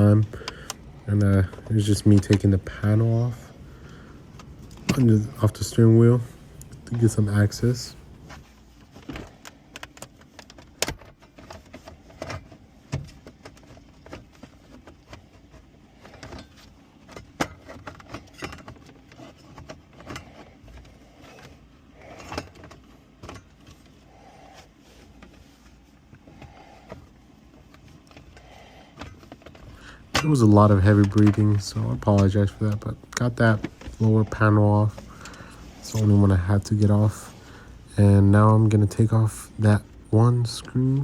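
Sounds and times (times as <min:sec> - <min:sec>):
heavy breathing: 0:00.2 - 0:01.0, 0:03.4 - 0:04.9, 0:23.9 - 0:25.4, 0:28.1 - 0:30.2, 0:34.9 - 0:36.1, 0:37.2 - 0:37.9.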